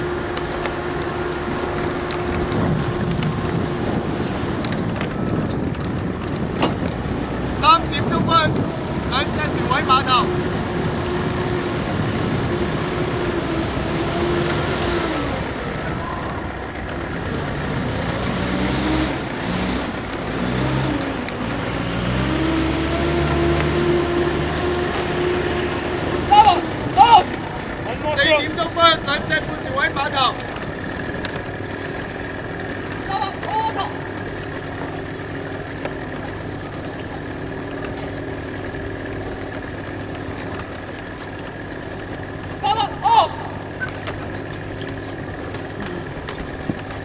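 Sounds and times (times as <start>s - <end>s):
engine running: 0.0s - 47.0s
faint clicks: 0.3s - 7.5s, 19.3s - 21.9s, 24.5s - 42.6s, 43.4s - 47.0s.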